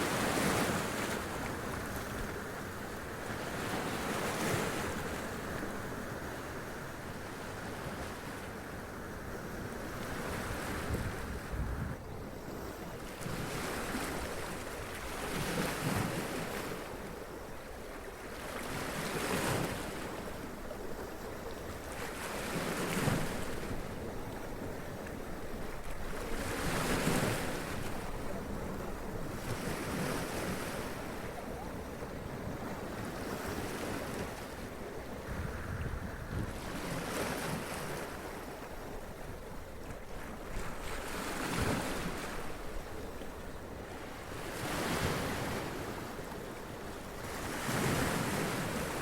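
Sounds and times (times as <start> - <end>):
rush of surf: 25.9 - 38.7.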